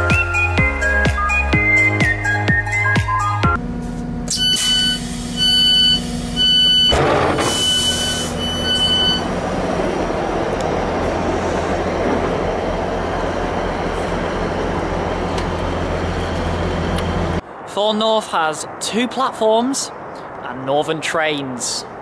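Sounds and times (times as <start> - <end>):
diesel train hum: 0.0 - 18.4
train door warning beeps: 4.3 - 9.3.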